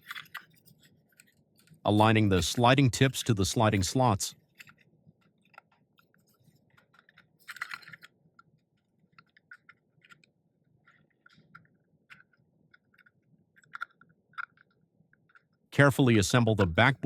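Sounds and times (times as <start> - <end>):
plastic parts clicking and tapping: 0.0 - 2.7, 4.5 - 15.6.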